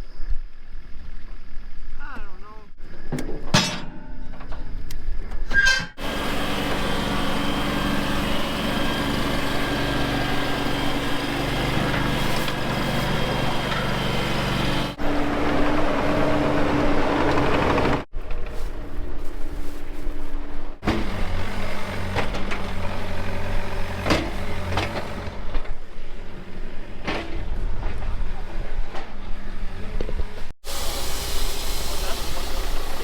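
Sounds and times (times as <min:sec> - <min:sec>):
machine engine running: 0:06.0 - 0:18.1, 0:20.8 - 0:27.0.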